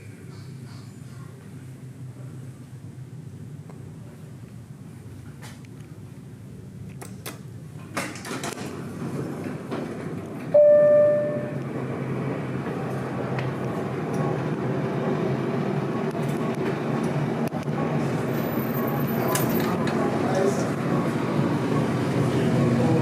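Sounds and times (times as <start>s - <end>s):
elevator mechanical running noise: 0.0s - 23.0s
elevator clicks and clunks: 6.9s - 12.0s
electronic chime: 10.6s - 11.6s.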